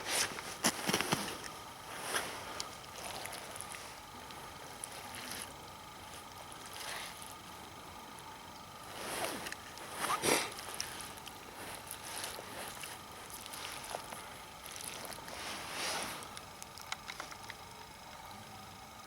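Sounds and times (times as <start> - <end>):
water sloshing and splashing: 0.6 - 7.6, 8.9 - 16.3
small clicks: 16.2 - 18.3.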